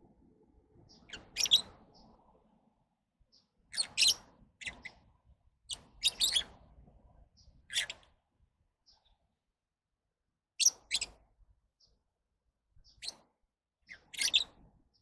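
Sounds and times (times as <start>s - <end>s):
lovebirds chirping shrilly: 1.1s - 1.7s.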